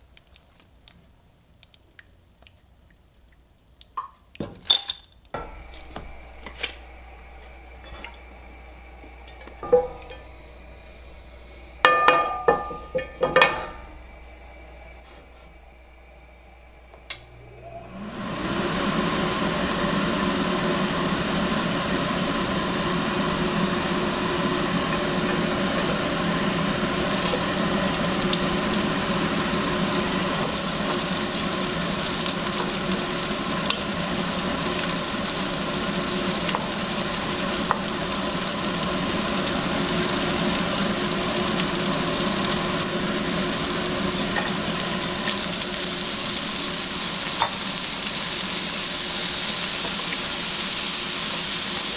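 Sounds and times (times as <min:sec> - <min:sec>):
food sizzling in a pan: 0:05.4 - 0:15.4, 0:22.6 - 0:51.9
low hum: 0:05.4 - 0:47.3.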